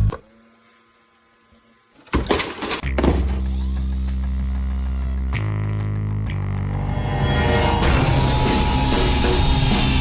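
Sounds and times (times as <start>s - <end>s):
low droning background music: 2.8s - 10.0s.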